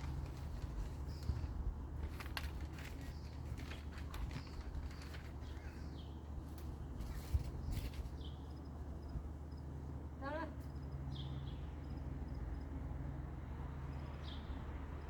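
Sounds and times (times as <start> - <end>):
birds chirping: 2.8 - 6.9.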